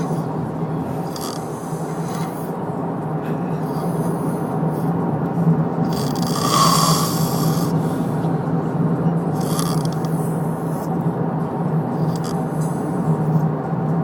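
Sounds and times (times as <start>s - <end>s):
man snoring: 0.0s - 2.4s, 5.8s - 7.8s, 9.3s - 10.3s, 12.0s - 12.4s
steady low hum: 0.0s - 14.0s.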